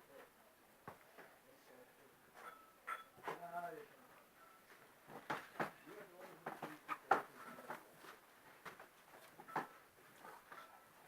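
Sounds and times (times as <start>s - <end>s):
voices murmuring: 5.7s - 8.2s.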